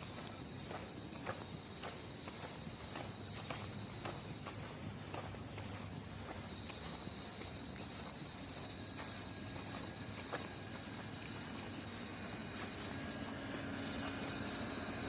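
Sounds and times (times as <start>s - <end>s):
insects chirping: 0.0s - 15.0s
steady high whine: 4.2s - 15.0s
low hum: 7.8s - 15.0s.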